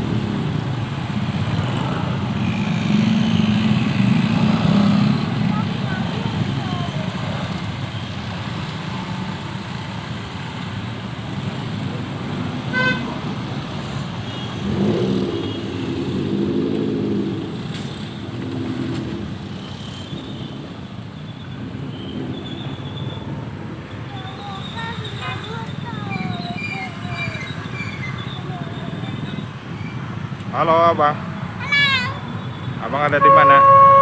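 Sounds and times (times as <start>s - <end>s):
road traffic passing: 0.0s - 34.0s
long multi-tone horn: 12.7s - 13.2s, 31.6s - 34.0s
short horn beep: 33.1s - 34.0s.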